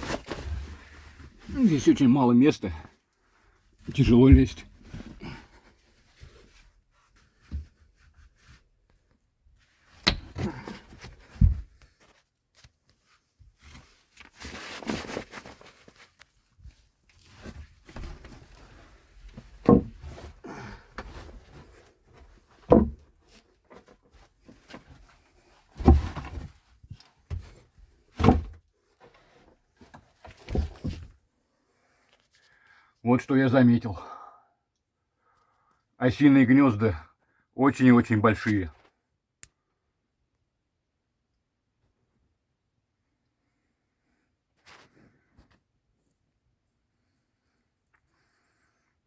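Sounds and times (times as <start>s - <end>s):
rustling: 9.6s - 20.4s
knocks and thumps on wood: 11.3s - 11.8s, 19.6s - 20.2s, 22.7s - 23.0s, 28.2s - 28.6s.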